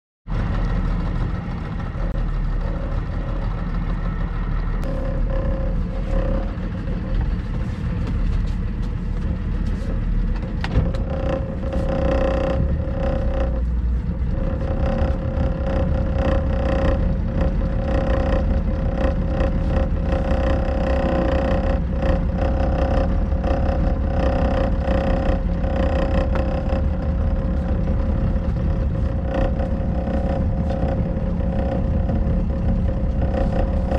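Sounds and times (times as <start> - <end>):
motorboat engine rumbling: 0.2 - 33.9.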